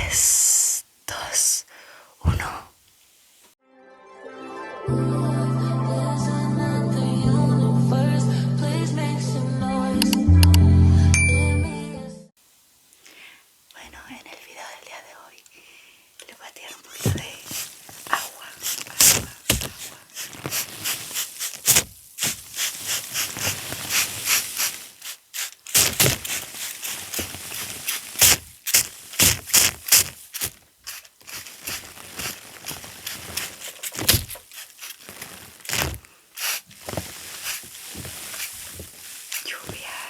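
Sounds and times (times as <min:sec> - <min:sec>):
soft hiss: 0:00.0 - 0:03.6, 0:12.4 - 0:40.0
sand scratching and crunching: 0:17.1 - 0:40.0.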